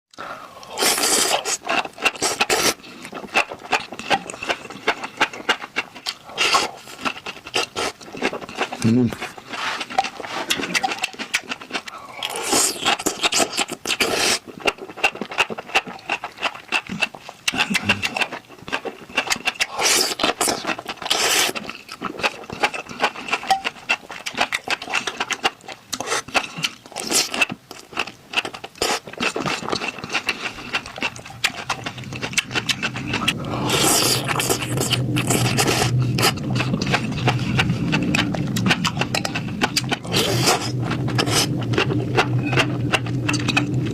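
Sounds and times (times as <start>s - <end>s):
person chewing food: 0.1s - 43.9s
steady low hum: 29.2s - 43.9s.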